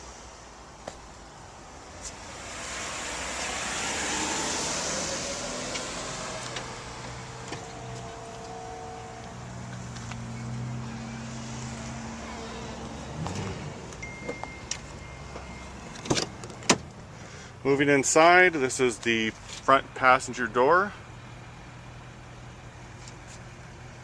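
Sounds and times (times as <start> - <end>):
broad rush of noise: 0.0 - 14.8.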